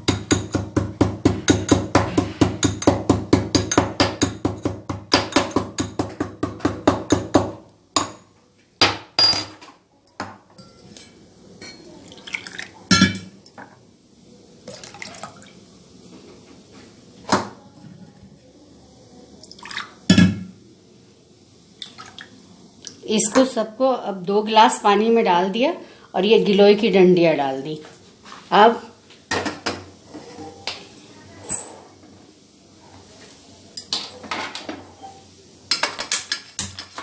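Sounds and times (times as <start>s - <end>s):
pestle pounding in a mortar: 0.0s - 8.1s
kitchen utensils clinking: 9.2s - 11.9s, 12.9s - 13.7s, 31.4s - 31.9s, 33.8s - 37.0s.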